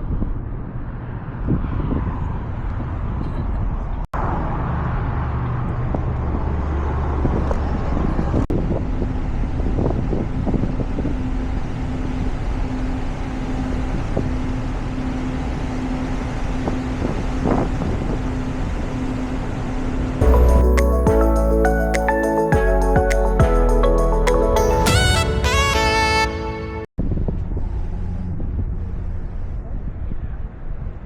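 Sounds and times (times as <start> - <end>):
wind on microphone: 0.0 - 4.6, 5.6 - 12.4
vehicle road noise: 0.0 - 31.0.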